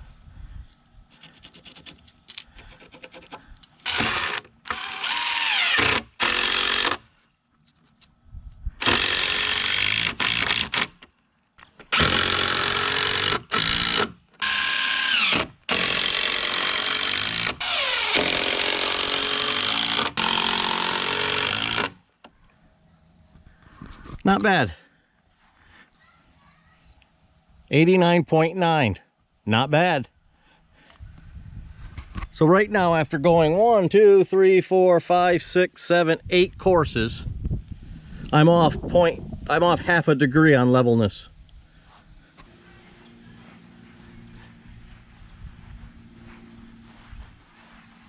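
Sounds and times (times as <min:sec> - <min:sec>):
power drill driving screws into wood: 0:02.8 - 0:07.1, 0:08.8 - 0:11.1, 0:11.8 - 0:22.0.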